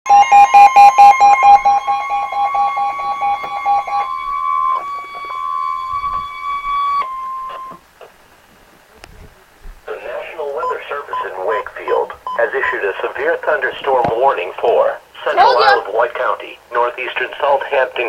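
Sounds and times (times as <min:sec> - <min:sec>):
rapid pulsing beeps: 0:00.1 - 0:07.7, 0:10.6 - 0:11.6
high-pitched emergency alert tone: 0:00.1 - 0:07.8.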